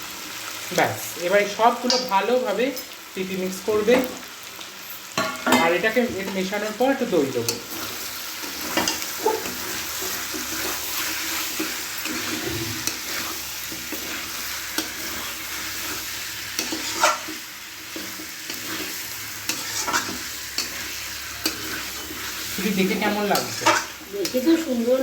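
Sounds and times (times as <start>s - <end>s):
chicken sizzling in oil: 0.0s - 25.0s
spatula scraping a pan: 7.5s - 24.8s.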